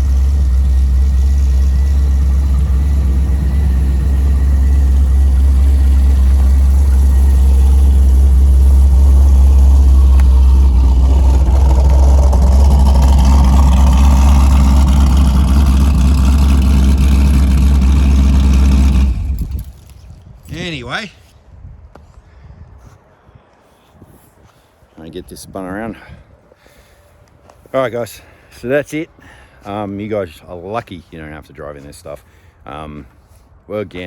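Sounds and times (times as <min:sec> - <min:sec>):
car engine rumbling: 0:00.0 - 0:20.4.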